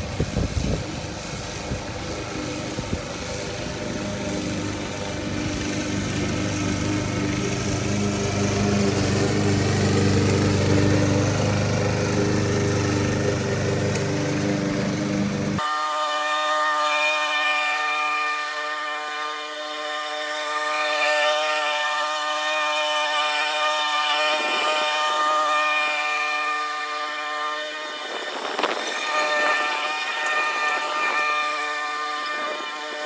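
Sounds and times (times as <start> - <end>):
lawn mower engine running: 0.0 - 15.6, 27.8 - 33.0.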